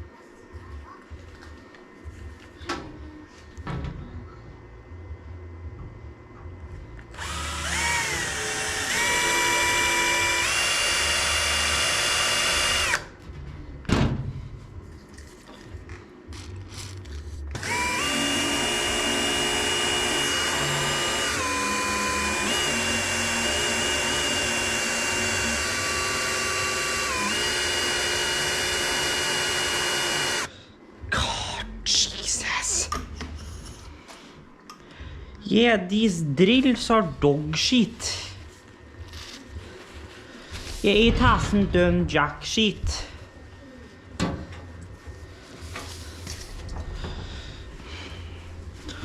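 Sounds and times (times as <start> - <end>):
electric drill running: 7.1 - 13.1, 17.5 - 30.5.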